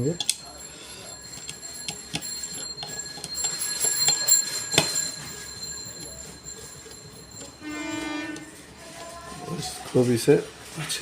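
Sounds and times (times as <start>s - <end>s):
small metal clicks and clinks: 0.0s - 7.6s
faint high whine: 3.6s - 8.8s.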